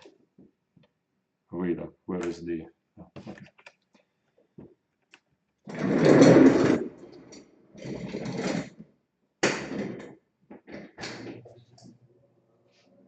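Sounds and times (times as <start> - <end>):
tools scraping on workbench: 5.7 - 8.8.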